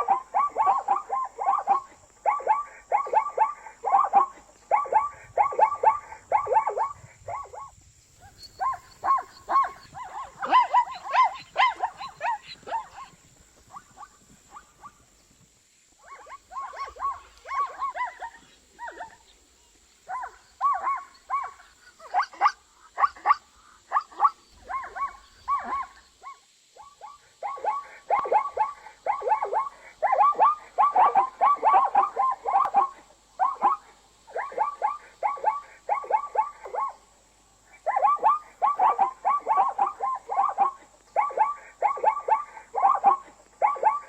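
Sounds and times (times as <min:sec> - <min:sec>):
zebra yelping barks: 0:00.0 - 0:15.0, 0:16.0 - 0:19.4, 0:20.0 - 0:44.0.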